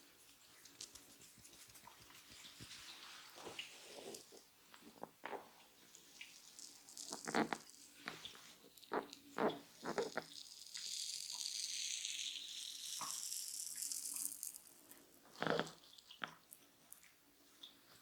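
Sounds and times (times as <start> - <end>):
hands rubbing a head: 0.6 - 4.3.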